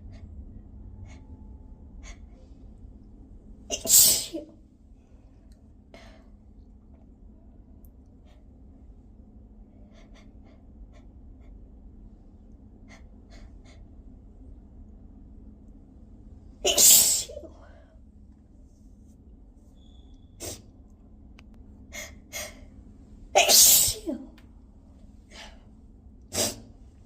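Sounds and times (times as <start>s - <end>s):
woman sneezing: 3.7s - 4.5s, 16.7s - 17.6s, 23.4s - 24.4s, 26.4s - 26.7s.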